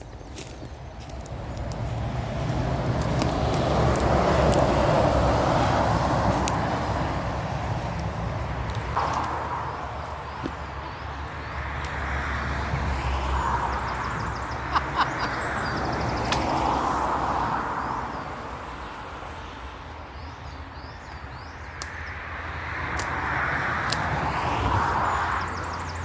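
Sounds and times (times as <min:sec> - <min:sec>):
small birds chirping: 0:00.0 - 0:18.2, 0:18.9 - 0:26.0
vehicles passing on road: 0:00.0 - 0:26.0
sharp clicks: 0:02.9 - 0:05.4.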